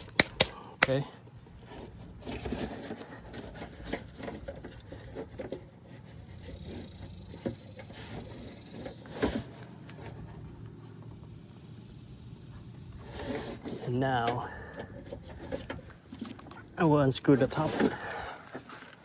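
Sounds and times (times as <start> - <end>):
hands rubbing and scraping metal: 0.0 - 1.0, 1.6 - 10.6, 13.0 - 16.4, 17.2 - 19.0.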